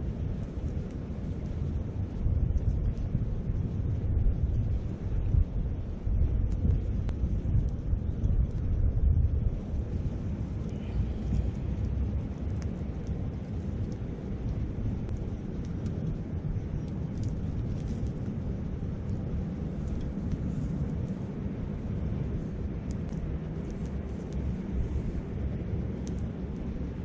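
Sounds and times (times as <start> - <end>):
campfire crackling and popping: 0.0 - 27.0
wind rumble on microphone: 0.0 - 27.0.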